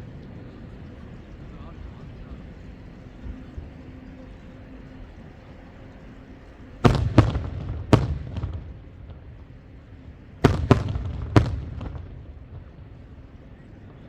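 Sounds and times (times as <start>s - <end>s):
fireworks shells bursting: 10.4s - 12.7s.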